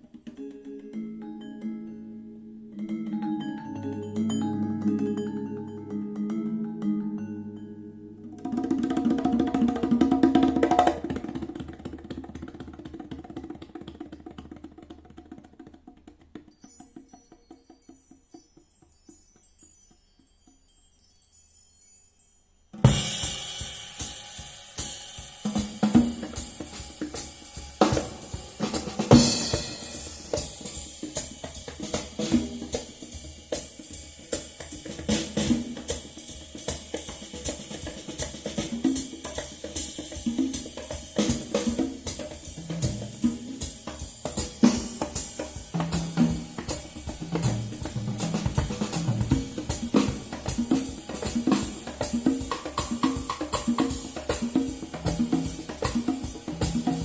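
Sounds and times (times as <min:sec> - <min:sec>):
cymbals: 0:22.7 - 0:57.0
hi-hat: 0:22.9 - 0:49.8
snare drum: 0:22.9 - 0:57.0.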